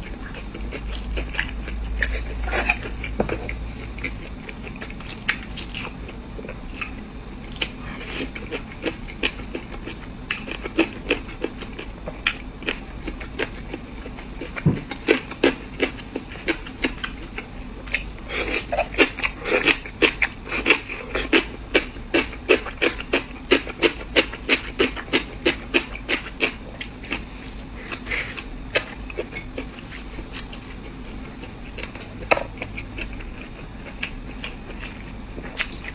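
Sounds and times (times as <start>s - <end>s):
chewing and mouth smacks: 0.2s - 35.9s.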